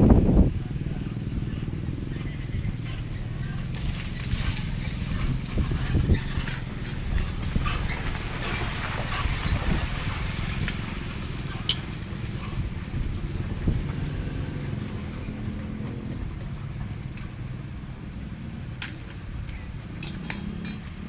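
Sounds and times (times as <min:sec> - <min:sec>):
low engine hum: 0:00.0 - 0:21.0
sharp metallic clinks: 0:04.2 - 0:04.6, 0:06.2 - 0:07.2, 0:08.4 - 0:08.9, 0:11.7 - 0:12.1, 0:20.0 - 0:21.0.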